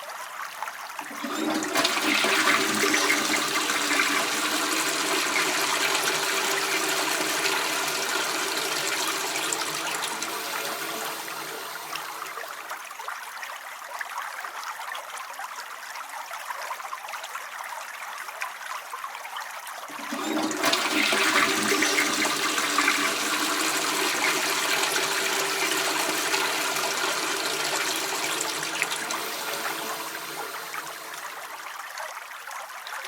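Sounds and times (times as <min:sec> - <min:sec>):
water trickling: 0:00.9 - 0:13.1, 0:19.9 - 0:32.1
toilet flushing: 0:00.9 - 0:13.2, 0:19.8 - 0:32.0.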